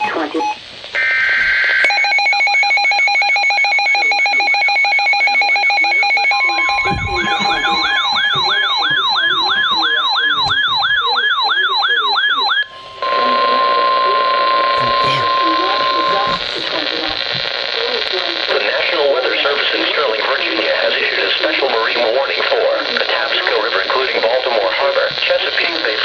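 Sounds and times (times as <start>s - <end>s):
steady warning tone: 0.0s - 17.0s
fast pulsing electronic warble: 5.9s - 13.4s
rising sweeping siren: 6.4s - 13.4s.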